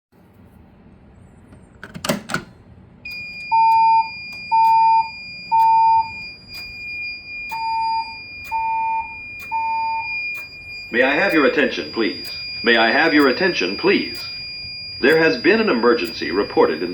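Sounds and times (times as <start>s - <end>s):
fire alarm beeps: 3.0s - 16.9s
steady high-pitched tone: 3.1s - 16.9s
clicks: 5.6s - 14.4s.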